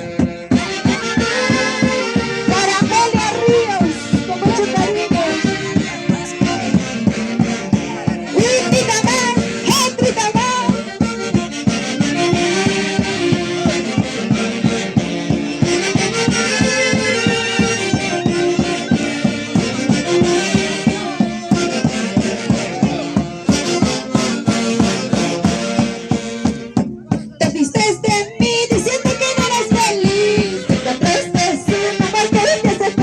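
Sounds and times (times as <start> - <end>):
folk orchestra music: 0.0 - 33.0.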